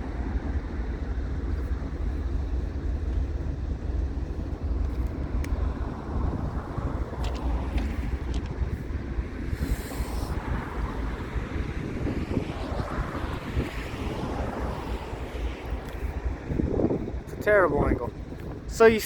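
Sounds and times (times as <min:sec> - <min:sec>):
low rumble of freight trains: 0:00.0 - 0:19.0.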